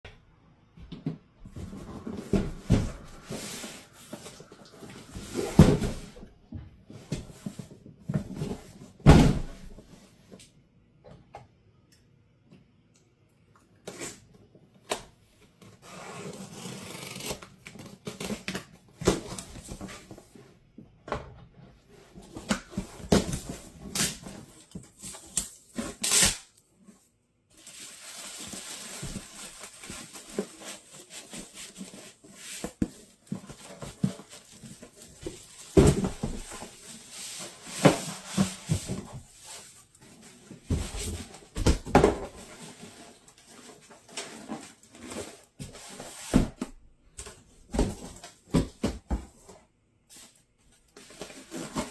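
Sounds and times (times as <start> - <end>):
cardboard packaging rustling: 27.5 - 46.6.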